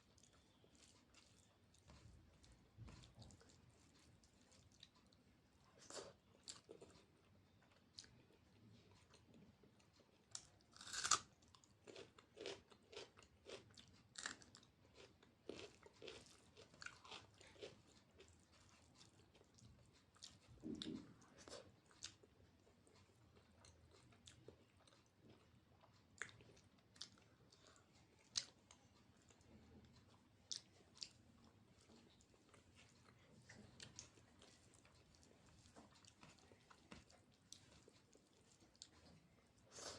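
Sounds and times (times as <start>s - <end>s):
person chewing food: 0.0s - 39.9s
loud crunchy bite: 10.8s - 11.2s.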